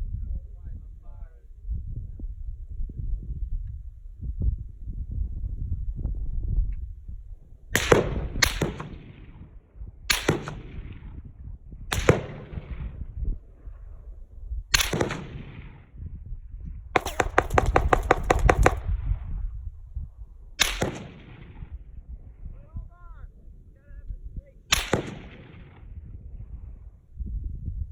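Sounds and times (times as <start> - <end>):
gunshots: 7.8 - 9.4, 10.1 - 11.1, 11.9 - 13.0, 14.7 - 15.9, 17.0 - 18.9, 20.6 - 21.7, 24.7 - 26.0.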